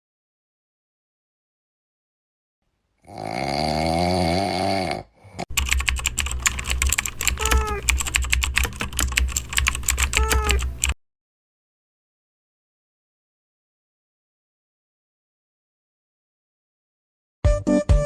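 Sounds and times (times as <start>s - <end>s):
rapid typing on keyboard: 5.5s - 11.0s.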